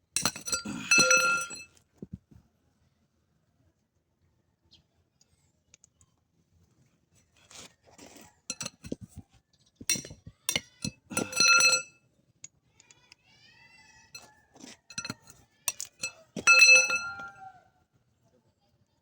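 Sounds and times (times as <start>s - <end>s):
ringing metallic scrape: 0.2s - 1.6s, 9.9s - 11.9s, 14.9s - 17.6s
metal tools clinking and scraping: 0.2s - 1.7s, 7.6s - 9.2s, 9.9s - 11.9s, 14.2s - 17.5s.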